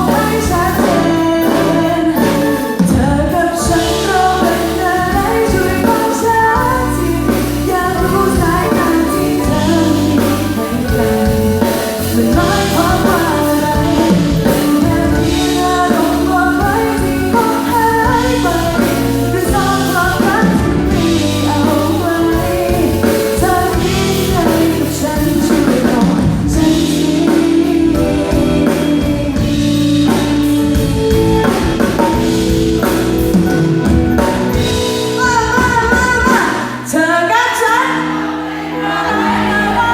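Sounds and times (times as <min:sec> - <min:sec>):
band playing with drums: 0:00.0 - 0:36.9
woman singing pop song: 0:00.0 - 0:39.9.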